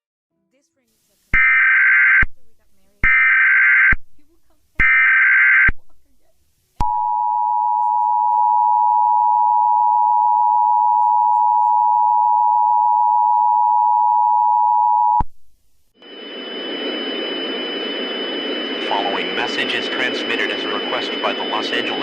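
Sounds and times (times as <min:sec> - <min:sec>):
two-tone alert alarm: 0:01.4 - 0:02.4, 0:03.0 - 0:04.0, 0:04.8 - 0:05.8, 0:16.0 - 0:22.0
hissing noise with high whine: 0:16.0 - 0:22.0.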